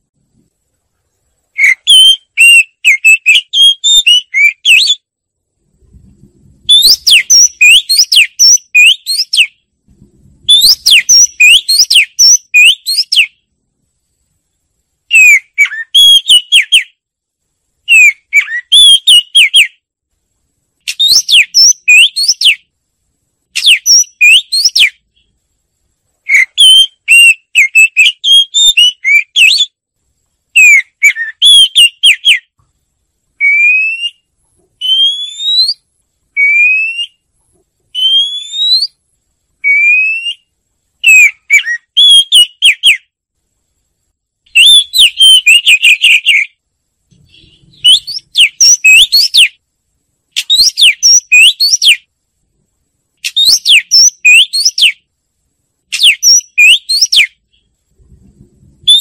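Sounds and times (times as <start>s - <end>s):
bird singing whistled phrases: 1.6s - 5.1s, 6.7s - 9.6s, 10.4s - 13.4s, 15.1s - 17.0s, 17.9s - 19.8s, 20.9s - 22.7s, 23.6s - 25.3s, 26.3s - 29.8s, 30.6s - 32.5s, 33.4s - 35.8s, 36.4s - 37.2s, 37.9s - 39.0s, 39.6s - 43.0s, 44.6s - 46.6s, 47.2s - 49.6s, 50.4s - 52.1s, 53.2s - 55.0s, 55.9s - 57.6s.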